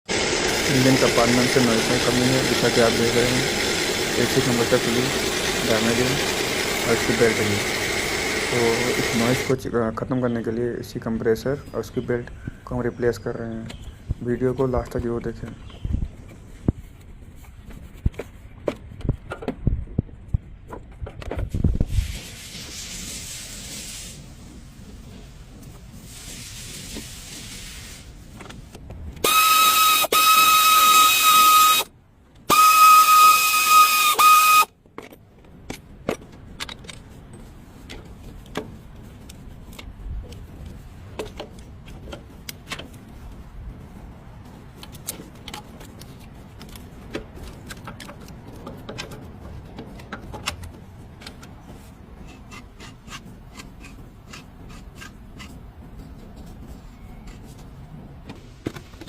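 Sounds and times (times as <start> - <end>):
brief hiss: 26.0 - 28.2.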